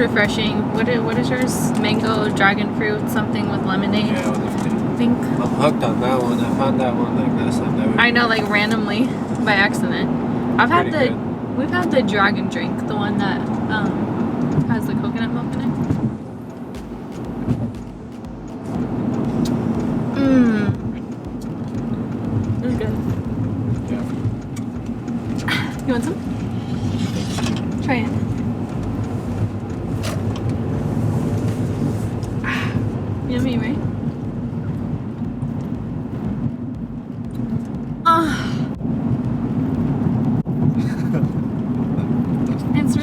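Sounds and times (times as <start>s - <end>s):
road noise inside a car: 0.0s - 43.0s
woman moaning: 20.2s - 20.8s, 38.1s - 38.7s.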